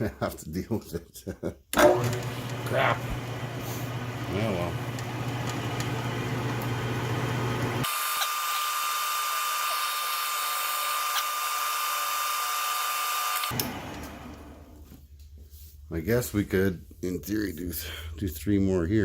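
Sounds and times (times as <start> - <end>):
electric power tool motor: 1.8 - 14.7.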